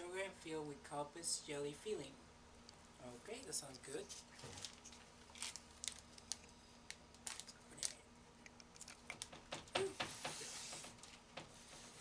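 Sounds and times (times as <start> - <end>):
plastic snack package crinkling: 3.7 - 9.3.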